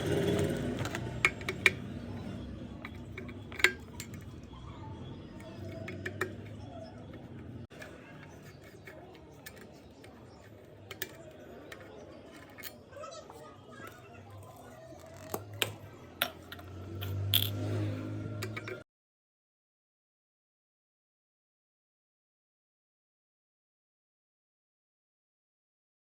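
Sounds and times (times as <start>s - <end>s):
metal parts clinking: 2.8s - 4.5s, 16.2s - 17.7s.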